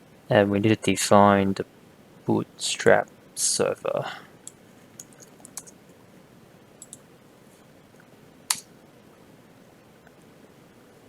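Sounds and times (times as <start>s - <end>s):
faint steady hiss: 0.0s - 11.0s
keyboard keystrokes: 5.0s - 5.8s, 6.8s - 7.0s.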